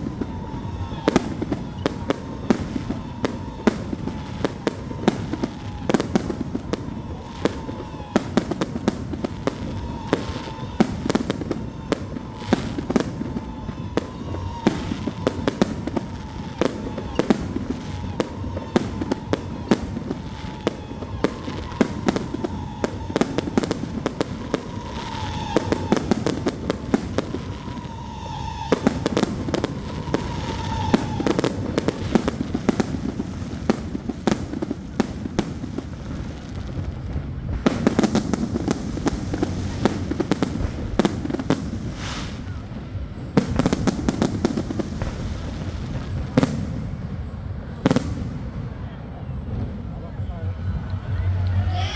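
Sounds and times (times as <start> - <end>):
fireworks bangs and crackling: 0.0 - 51.9.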